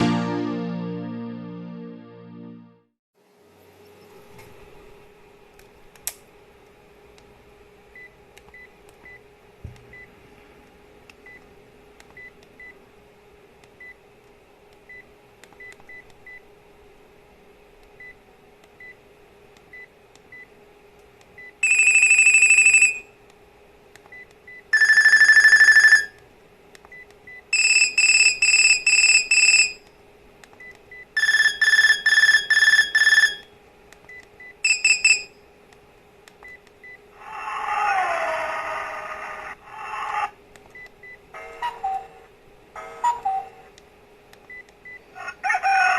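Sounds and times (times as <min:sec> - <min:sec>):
electronic ringtone from phone speaker: 0:21.6 - 0:23.0, 0:24.8 - 0:26.2, 0:27.6 - 0:29.8, 0:31.2 - 0:33.5, 0:34.6 - 0:35.3.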